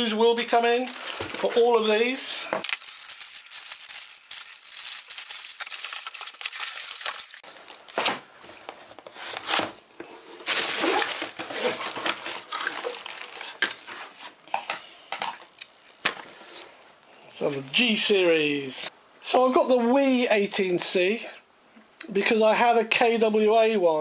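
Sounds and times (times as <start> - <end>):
packaging rustling and crinkling: 2.6 - 7.4.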